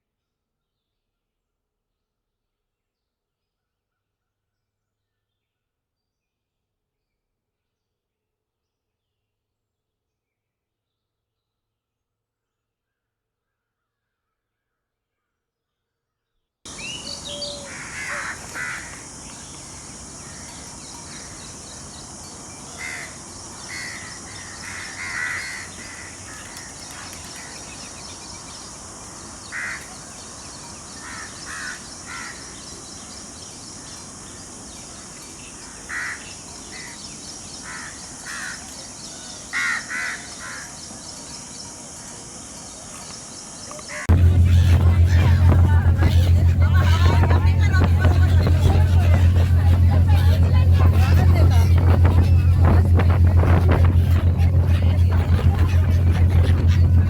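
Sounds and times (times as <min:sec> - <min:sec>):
short bird calls: 0:16.7 - 0:32.8
steady high hiss: 0:16.7 - 0:38.2.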